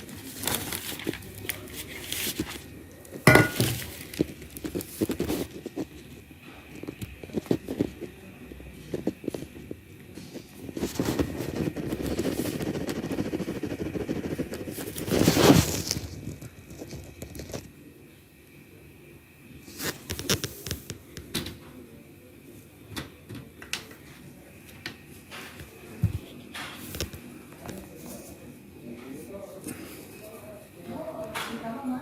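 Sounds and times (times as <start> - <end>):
rubbing and scraping on plastic: 0.0 - 17.7.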